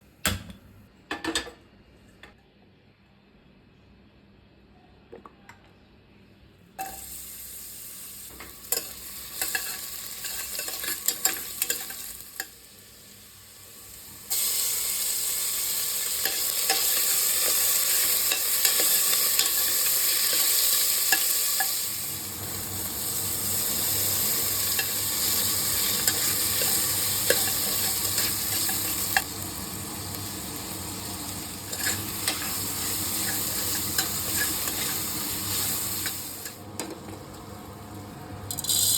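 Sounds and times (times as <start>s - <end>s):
food sizzling in a pan: 6.8s - 38.9s
spoon clicking and scraping pan: 8.7s - 12.6s, 16.2s - 21.8s, 24.7s - 29.3s, 31.7s - 36.9s.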